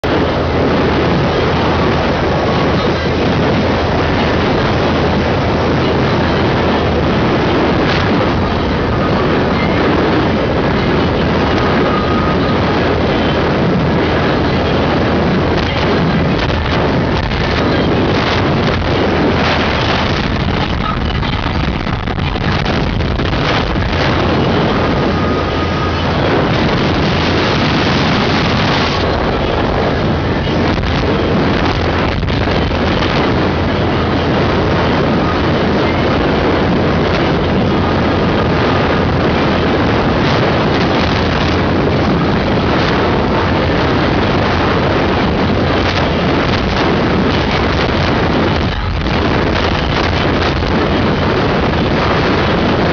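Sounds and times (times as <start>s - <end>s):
boat engine running: 0.0s - 52.9s
wind noise on microphone: 0.0s - 52.9s.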